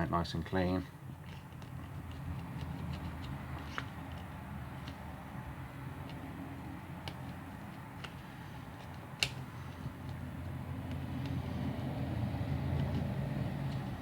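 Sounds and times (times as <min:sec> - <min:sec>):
plastic pry card clicking and scraping: 0:01.1 - 0:11.6.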